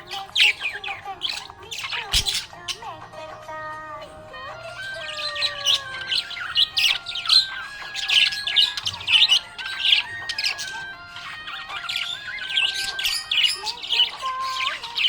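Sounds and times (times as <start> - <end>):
budgerigar chirping and warbling: 0.0 - 3.3, 4.0 - 15.0.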